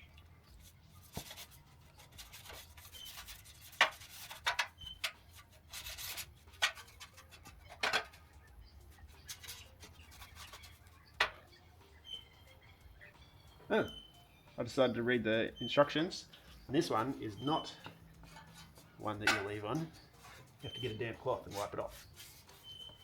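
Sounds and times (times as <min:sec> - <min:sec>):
brush scrubbing sheet steel: 0:00.6 - 0:07.7, 0:16.9 - 0:23.0.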